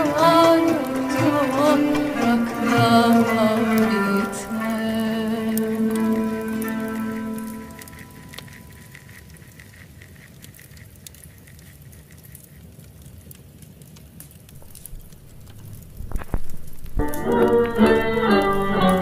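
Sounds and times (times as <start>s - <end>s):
music: 0.0s - 8.6s, 17.0s - 19.0s
wood fire crackling: 0.0s - 19.0s.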